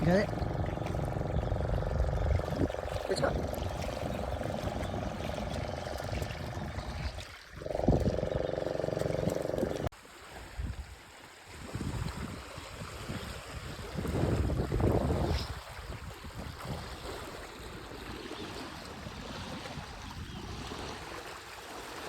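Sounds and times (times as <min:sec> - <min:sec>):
wind noise on microphone: 0:00.0 - 0:08.4, 0:11.5 - 0:21.2
motorboat engine droning: 0:00.0 - 0:09.9.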